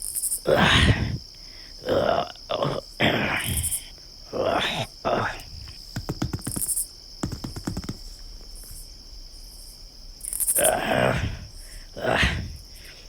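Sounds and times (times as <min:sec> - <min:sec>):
crickets chirping: 0:00.0 - 0:13.0
short throaty vocal sounds: 0:00.5 - 0:05.8, 0:10.6 - 0:12.6
rapid rattling clicks: 0:05.8 - 0:08.2.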